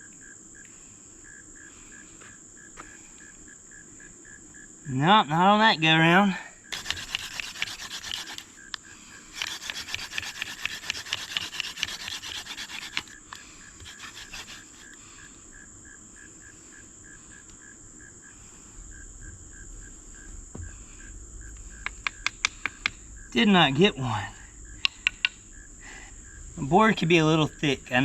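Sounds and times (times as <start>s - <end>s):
high insect hum: 0.0s - 28.0s
insects chirping: 0.0s - 28.0s
wooden spindle grinding on fireboard: 6.7s - 8.7s, 9.3s - 15.0s, 18.4s - 28.0s.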